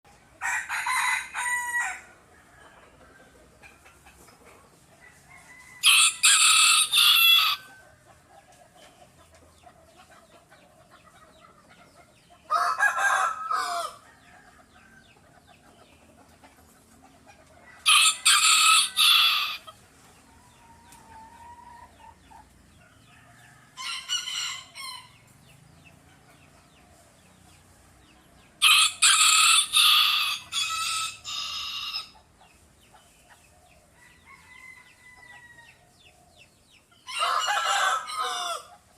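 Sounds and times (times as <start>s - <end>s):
roosters crowing: 0.4s - 3.6s, 5.0s - 8.2s, 12.4s - 15.2s, 17.6s - 19.8s, 20.4s - 25.8s, 28.3s - 32.2s, 33.8s - 36.1s, 37.0s - 38.9s.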